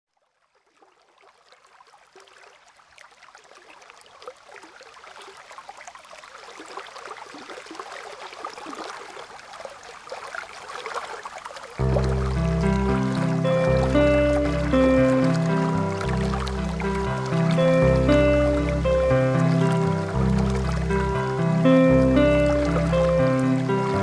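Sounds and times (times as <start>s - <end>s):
running water babbling: 0.2s - 24.0s.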